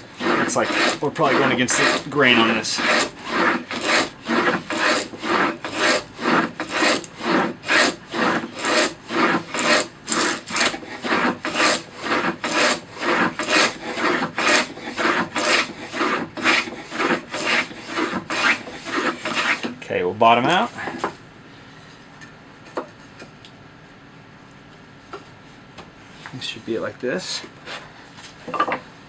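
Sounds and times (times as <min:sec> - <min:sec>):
hand plane scraping wood: 0:00.0 - 0:19.8, 0:20.6 - 0:21.2, 0:27.6 - 0:27.9.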